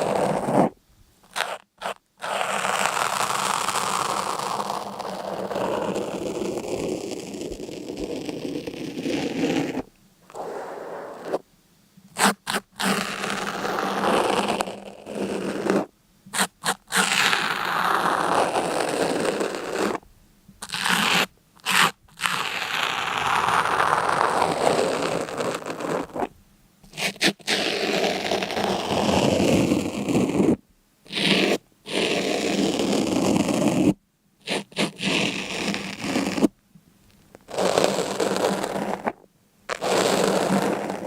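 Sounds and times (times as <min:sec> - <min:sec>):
scraping crunching strokes: 0:00.0 - 0:11.4, 0:31.9 - 0:41.0.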